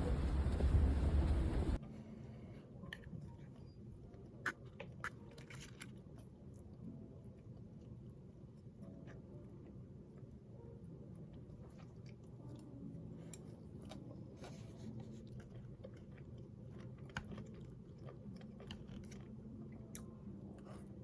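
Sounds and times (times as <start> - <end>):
low steady hum: 0.0 - 4.4
person chewing food: 4.4 - 6.3, 13.3 - 20.9.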